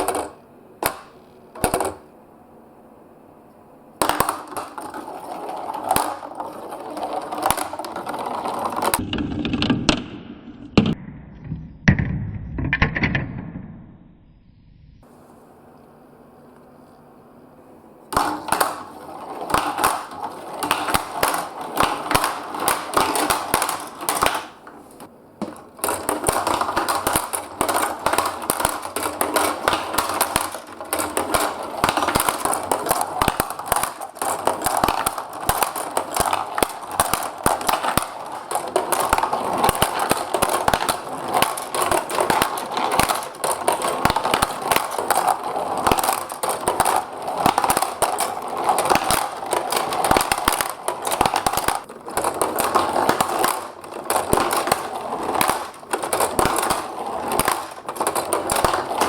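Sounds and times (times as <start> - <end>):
marbles clattering down a marble run: 4.0 - 10.0, 18.1 - 59.0.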